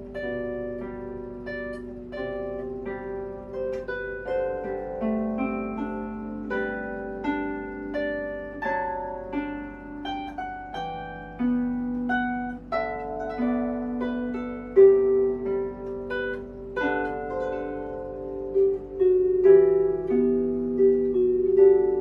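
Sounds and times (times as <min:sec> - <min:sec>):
harp melody: 0:00.0 - 0:22.0
low harp bass notes: 0:00.0 - 0:22.0.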